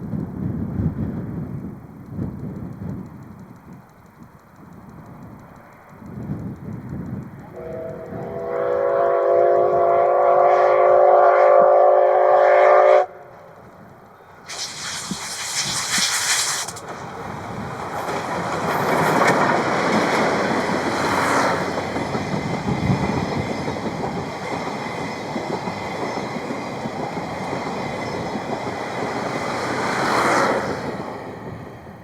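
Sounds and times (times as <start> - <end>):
train wheels clickety-clack on rails: 0.0 - 10.9, 13.2 - 32.0
steam hiss: 14.5 - 22.1.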